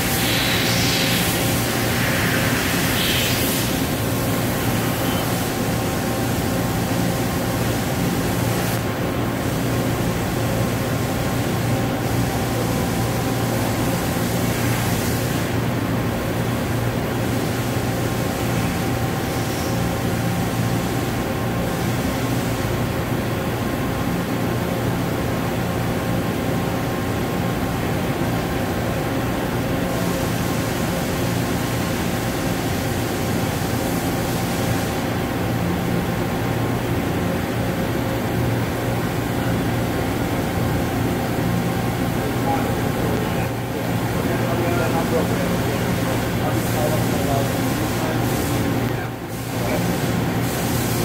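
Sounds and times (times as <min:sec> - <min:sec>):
high hiss: 0:00.0 - 0:05.5
machining centre humming: 0:00.0 - 0:51.0.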